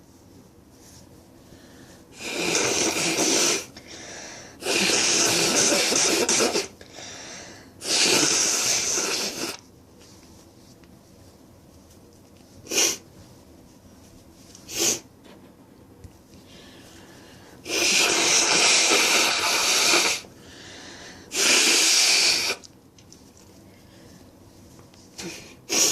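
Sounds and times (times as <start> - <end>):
person blowing nose: 2.2 - 7.2, 7.8 - 9.6, 12.6 - 13.0, 14.6 - 15.1, 17.6 - 20.3, 21.2 - 22.7, 25.2 - 25.9
sharp sniffs: 12.6 - 13.0, 14.6 - 15.1, 16.6 - 22.6, 25.2 - 25.9.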